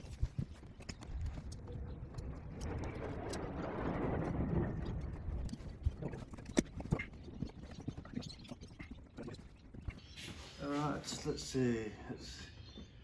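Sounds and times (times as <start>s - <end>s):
rustling and scraping of a part: 9.2s - 11.3s.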